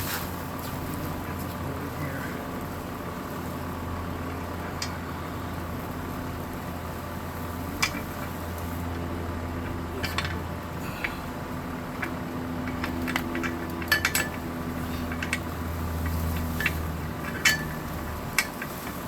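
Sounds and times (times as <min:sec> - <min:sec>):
steady low hum: 0:00.0 - 0:19.0
metallic clinks: 0:12.0 - 0:18.6.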